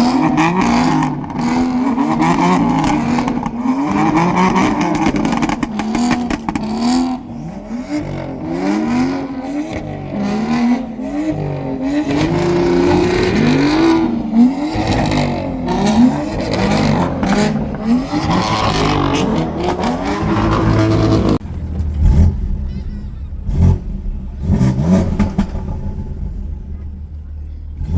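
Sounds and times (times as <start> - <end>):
car engine revving: 0.0 - 27.9
exhaust pops: 2.3 - 7.0, 14.7 - 27.1.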